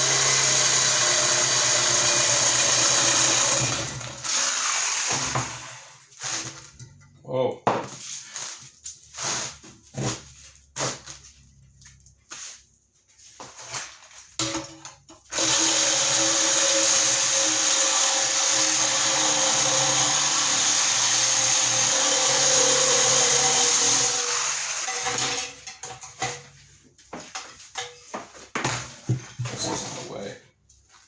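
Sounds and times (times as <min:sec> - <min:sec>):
reciprocating saw cutting metal: 0:00.0 - 0:06.6, 0:15.3 - 0:25.7
metal knocks and clinks: 0:24.8 - 0:26.6, 0:27.2 - 0:29.6.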